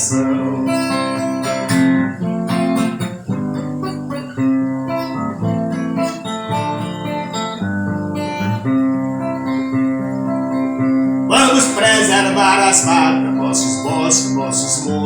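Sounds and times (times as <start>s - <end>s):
acoustic guitar playing: 0.0s - 15.0s.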